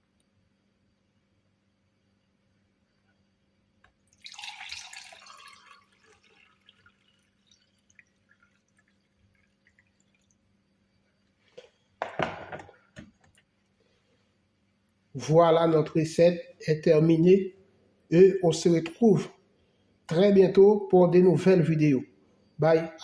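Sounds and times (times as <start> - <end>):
water dripping: 3.9 - 11.4
liquid pouring: 4.0 - 11.3
splashing: 4.1 - 10.4.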